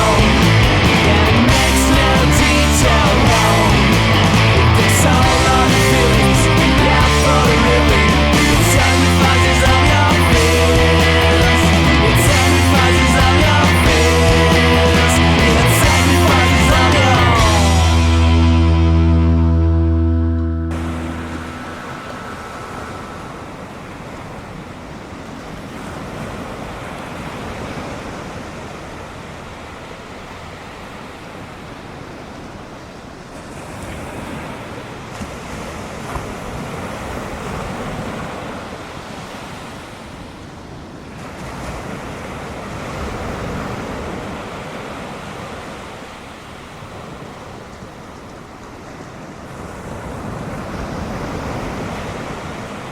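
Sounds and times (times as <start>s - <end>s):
ocean surf breaking: 0.0s - 52.9s
wind on microphone: 20.7s - 28.8s.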